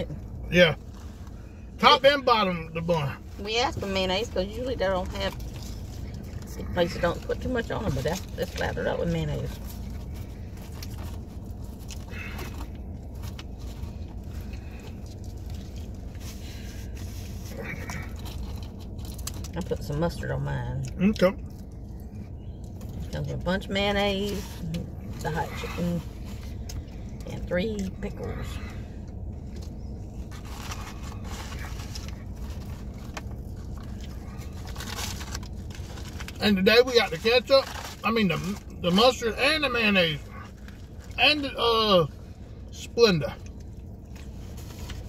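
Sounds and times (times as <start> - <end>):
low car cabin rumble: 0.0 - 45.0
food wrapper crinkles: 9.5 - 19.6, 29.2 - 36.4, 37.6 - 38.0.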